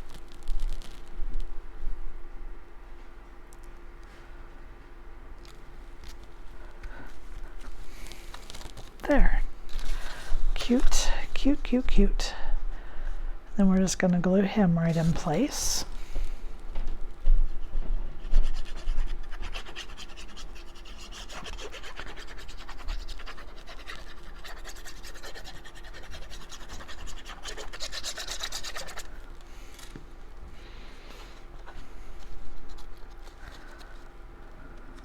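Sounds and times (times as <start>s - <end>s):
cardstock being handled and rubbed: 18.2s - 29.2s, 31.6s - 34.1s
fast scratchy rasp: 18.4s - 29.2s.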